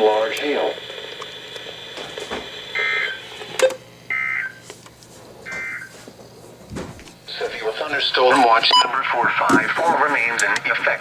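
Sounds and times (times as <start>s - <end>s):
radio static: 0.0s - 4.5s, 7.2s - 11.0s
warbling digital data tones: 2.7s - 3.3s.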